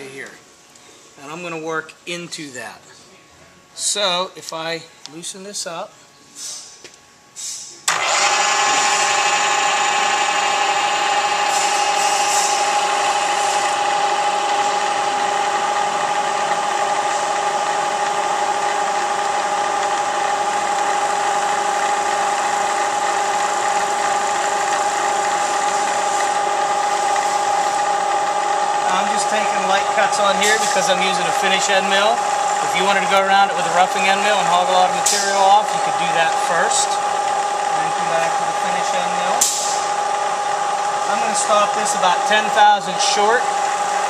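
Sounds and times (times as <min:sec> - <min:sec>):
milling machine spindle whining: 0:07.9 - 0:44.0.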